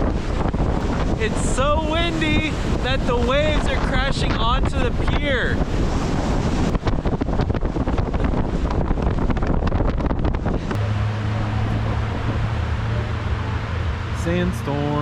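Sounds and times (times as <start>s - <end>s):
even rush of noise: 0.0s - 15.0s
waves crashing against pier: 0.0s - 15.0s
wind buffeting microphone: 0.0s - 15.0s
steady low hum: 4.6s - 15.0s.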